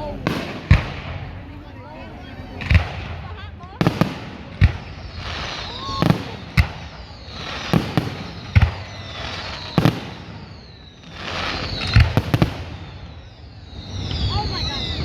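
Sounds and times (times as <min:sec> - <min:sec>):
fireworks hissing: 0:00.0 - 0:01.9, 0:02.5 - 0:15.0
fireworks banging: 0:00.0 - 0:15.0
whistling tones sliding down: 0:04.8 - 0:15.0.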